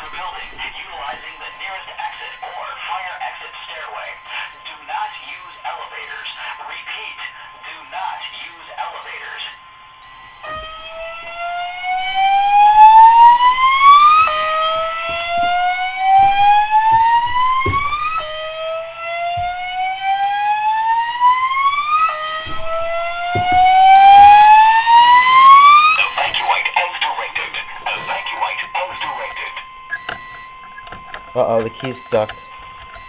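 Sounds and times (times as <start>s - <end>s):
faint high-pitched beeps: 0.0s - 2.8s, 4.0s - 6.7s, 8.0s - 10.6s, 26.0s - 30.6s, 31.3s - 33.0s.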